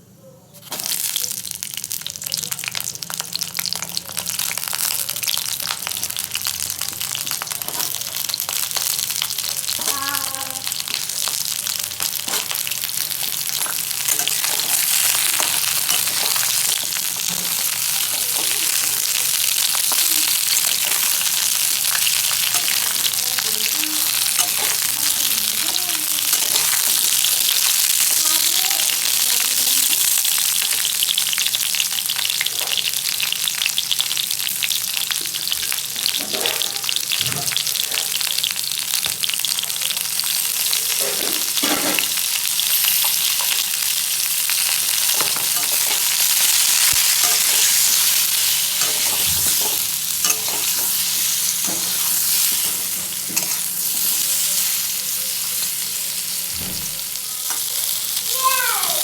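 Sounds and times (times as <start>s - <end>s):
food sizzling in a pan: 0.6s - 59.0s
spatula scraping a pan: 44.5s - 54.9s.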